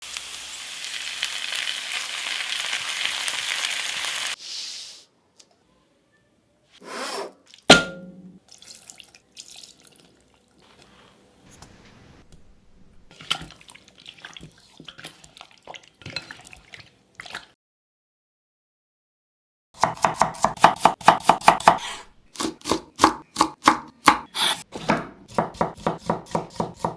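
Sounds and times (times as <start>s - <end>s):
dish clinking down: 7.7s - 8.4s.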